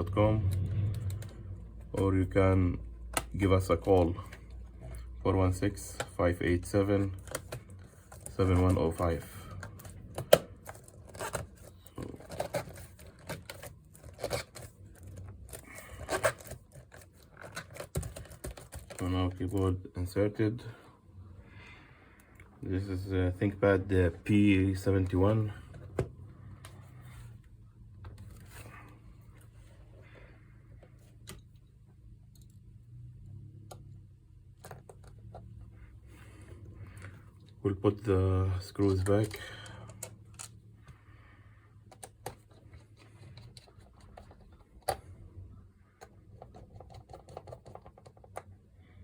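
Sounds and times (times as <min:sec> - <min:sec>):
plastic parts scraping and clicking: 0:00.0 - 0:20.2, 0:33.7 - 0:35.7, 0:38.5 - 0:41.0, 0:41.8 - 0:45.3, 0:45.9 - 0:48.6.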